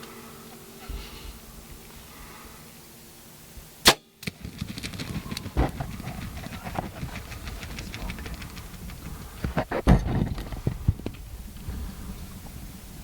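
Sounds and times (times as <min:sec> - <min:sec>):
bow shot crack: 0:03.8 - 0:09.0
turkey flapping and scuffling: 0:04.2 - 0:12.8.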